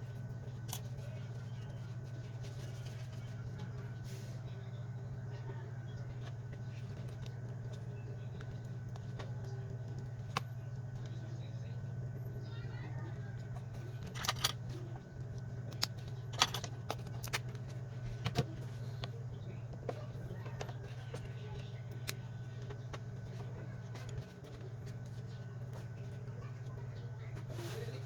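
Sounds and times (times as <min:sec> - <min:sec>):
steady low hum: 0:00.0 - 0:28.0
small parts and tools clicking: 0:14.0 - 0:14.8, 0:15.7 - 0:19.1.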